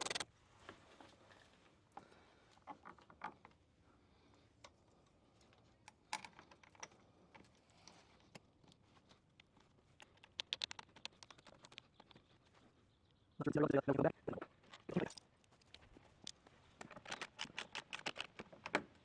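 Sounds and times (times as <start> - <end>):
hand tools clicking and tapping: 0.0 - 0.2, 10.0 - 12.2, 15.0 - 18.8.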